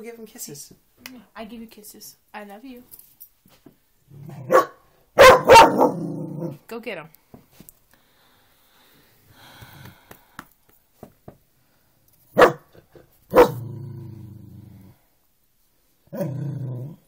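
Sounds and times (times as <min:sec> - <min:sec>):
dog growling: 0:04.1 - 0:04.7, 0:05.4 - 0:06.6, 0:12.4 - 0:15.1, 0:16.1 - 0:17.0
dog barking: 0:04.4 - 0:06.6, 0:12.4 - 0:13.6.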